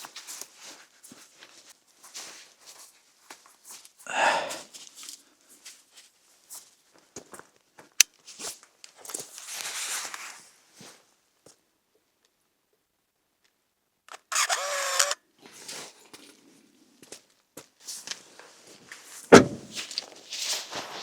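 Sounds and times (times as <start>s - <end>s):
rustling of clothing and gear: 0.0s - 11.6s, 15.5s - 21.0s
footsteps: 19.3s - 21.0s.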